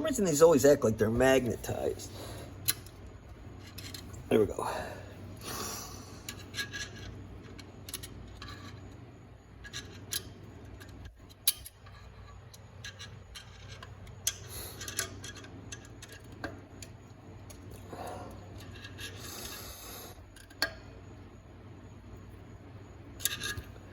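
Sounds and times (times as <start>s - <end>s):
steady low hum: 0.0s - 23.9s
metal clicks and tool scraping: 3.6s - 4.2s, 6.2s - 9.0s, 9.6s - 19.6s, 23.2s - 23.8s.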